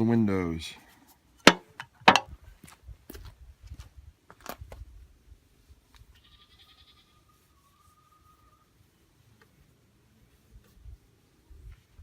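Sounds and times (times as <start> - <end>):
sharp clicks and knocks: 1.4 - 2.3.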